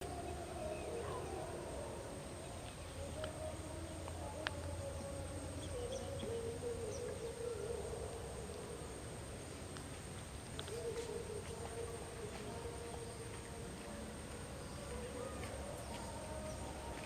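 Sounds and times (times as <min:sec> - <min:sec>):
insects droning: 0:00.0 - 0:17.0
faint clicks: 0:02.6 - 0:05.2.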